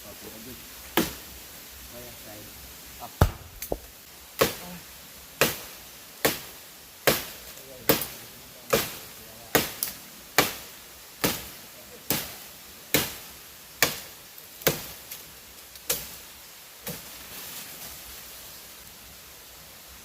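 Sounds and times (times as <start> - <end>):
sticks being chopped: 1.0 - 1.2, 3.2 - 4.8, 5.4 - 7.3, 7.9 - 10.6, 13.8 - 14.9.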